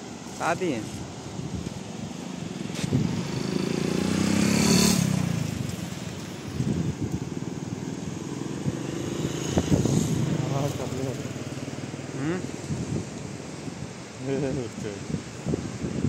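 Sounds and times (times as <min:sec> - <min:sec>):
motor vehicle driving past: 0:02.6 - 0:12.4.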